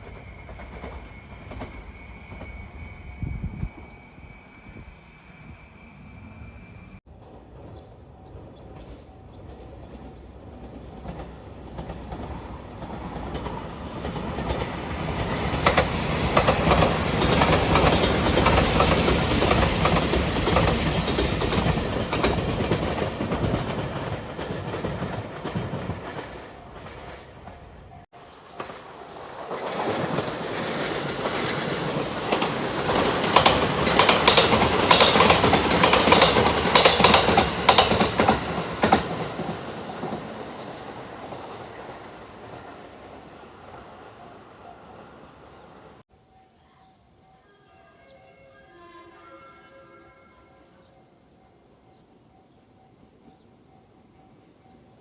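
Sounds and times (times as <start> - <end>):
train wheels clattering over rail joints: 28.5 - 40.4.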